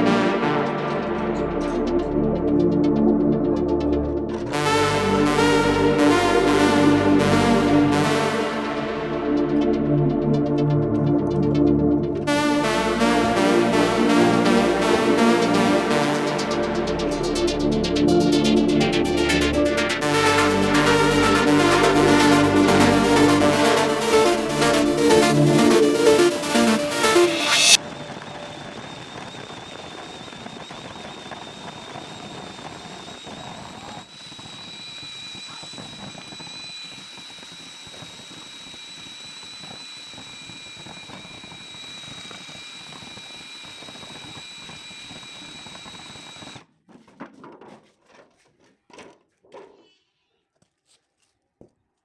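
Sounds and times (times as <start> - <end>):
electric drill whining: 27.4 - 46.7.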